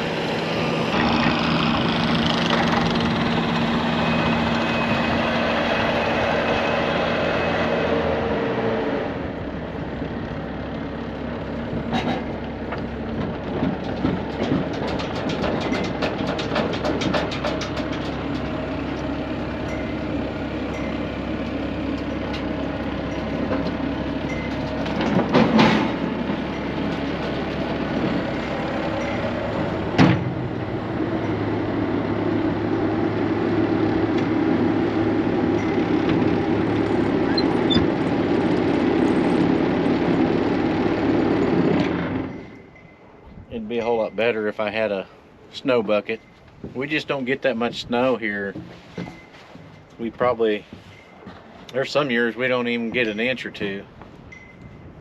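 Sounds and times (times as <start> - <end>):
loader engine running: 0.0 - 55.0
rattling clicks: 11.9 - 19.1
sharp loud knocks: 13.3 - 18.2.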